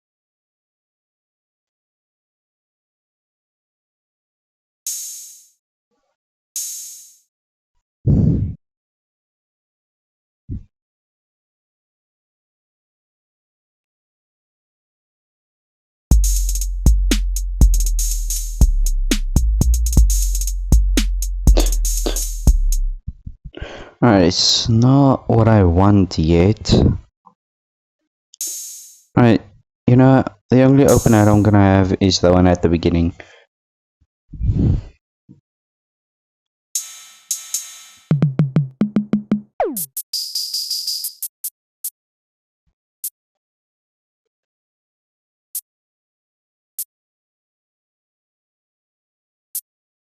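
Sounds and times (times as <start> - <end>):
fast hi-hat rolls: 16.1 - 22.8, 30.9 - 31.4
deep bass: 16.1 - 23.4
falling bass slide: 21.0 - 23.0
low drum thump: 38.1 - 39.4.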